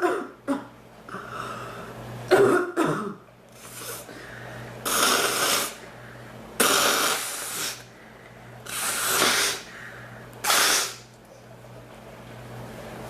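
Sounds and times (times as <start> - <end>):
woman coughing: 0.0 - 0.8, 2.3 - 3.2.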